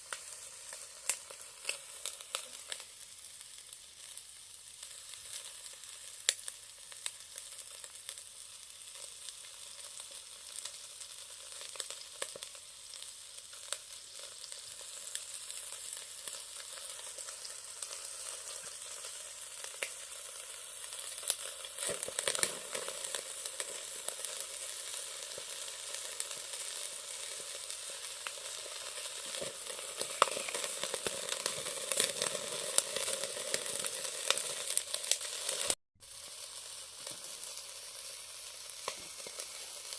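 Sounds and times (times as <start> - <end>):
meat sizzling on grill: 0.0 - 39.9.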